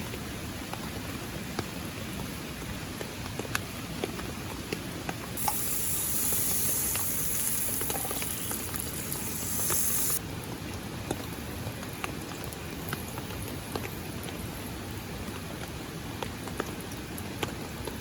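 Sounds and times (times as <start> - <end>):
rain falling steadily: 0.0 - 18.0
loud steady hiss: 5.4 - 10.2
single raindrops striking close: 5.4 - 10.2.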